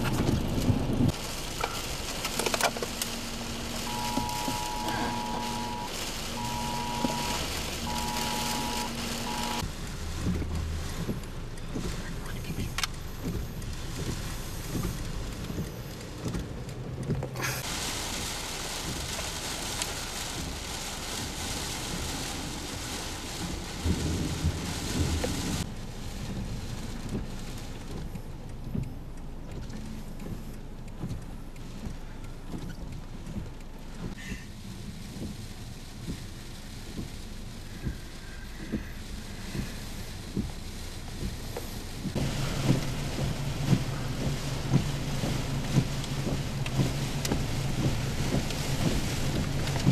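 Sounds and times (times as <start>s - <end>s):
engine running: 0.0s - 19.2s, 38.6s - 49.9s
hail and rain on vehicle: 0.0s - 49.9s
electronic beep: 3.8s - 9.6s.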